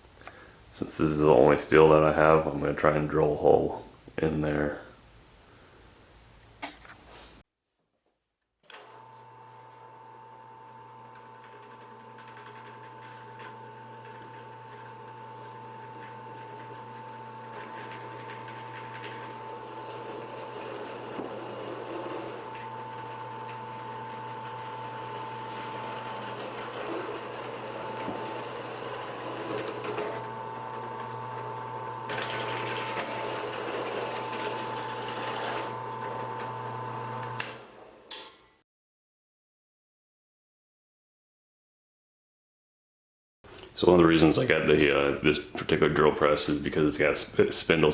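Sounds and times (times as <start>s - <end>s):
drill press motor humming: 8.7s - 38.2s.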